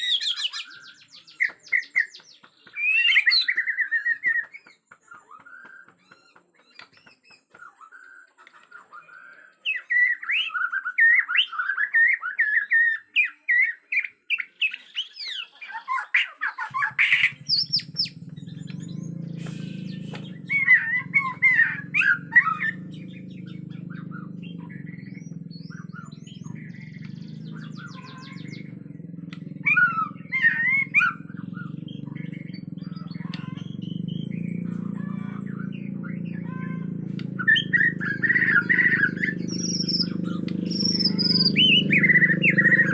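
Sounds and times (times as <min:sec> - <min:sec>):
bird singing whistled phrases: 0:00.0 - 0:02.2, 0:02.8 - 0:05.4, 0:09.0 - 0:28.7, 0:29.4 - 0:42.9
low hum: 0:16.8 - 0:42.9.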